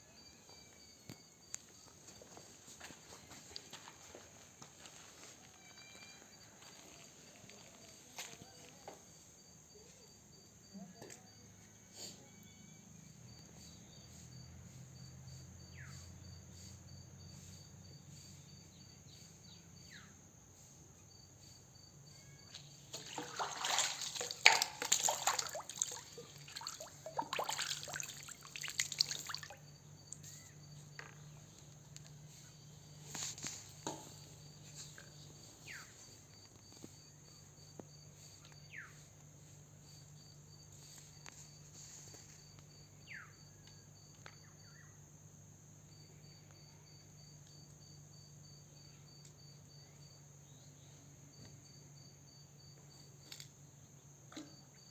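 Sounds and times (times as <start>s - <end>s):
high insect chirring: 4.9s - 8.1s, 12.3s - 45.0s
water splashing and sloshing: 22.9s - 29.6s.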